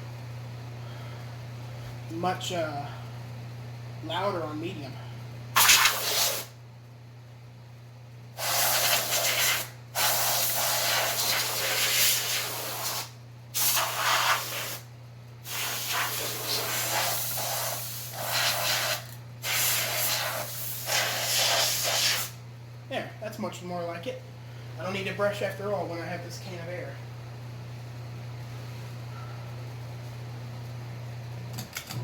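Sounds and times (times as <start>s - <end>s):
ceiling fan motor humming: 0.0s - 32.0s
compressed air hissing blasts: 5.6s - 6.6s, 8.4s - 22.4s.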